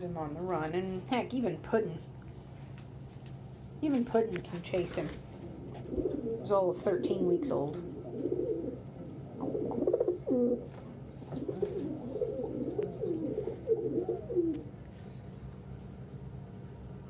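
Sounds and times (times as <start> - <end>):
steady low hum: 0.0 - 17.0
pigeons cooing: 4.9 - 14.8.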